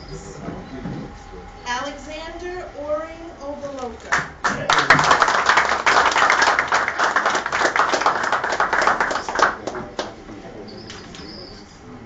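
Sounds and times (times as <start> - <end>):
people clapping: 4.1 - 10.2.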